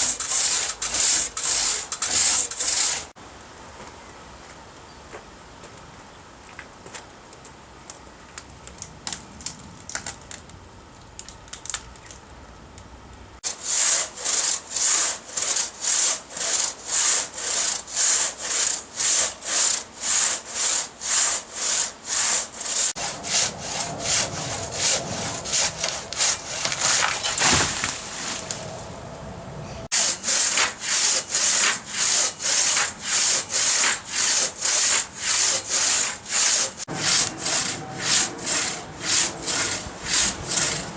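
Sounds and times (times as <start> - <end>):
hand saw cutting wood: 0.0 - 3.2, 13.4 - 28.6, 29.9 - 40.9.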